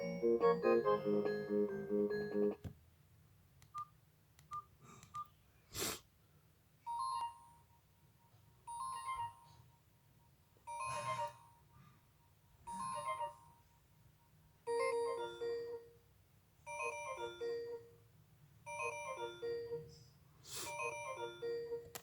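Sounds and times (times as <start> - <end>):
polyphonic phone ringtone: 0.0 - 2.6, 10.7 - 11.5, 16.7 - 18.0, 18.7 - 19.9, 20.7 - 21.9.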